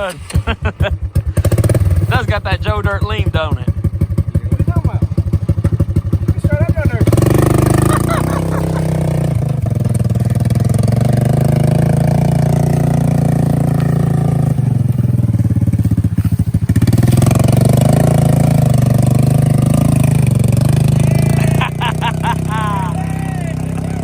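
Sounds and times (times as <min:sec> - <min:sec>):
atv engine revving: 0:00.0 - 0:24.0.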